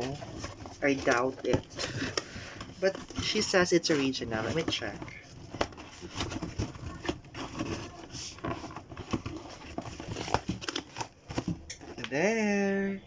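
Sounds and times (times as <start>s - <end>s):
cardboard box handled: 0.0s - 12.0s.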